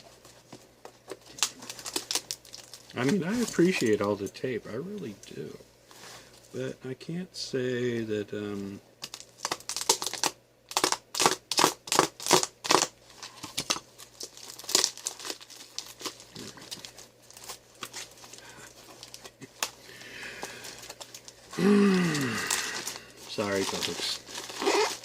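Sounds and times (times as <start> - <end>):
wrapping rustling: 0.0 - 4.2, 9.0 - 25.0
packing tape ripping: 1.2 - 3.5, 9.0 - 19.8, 21.9 - 25.0.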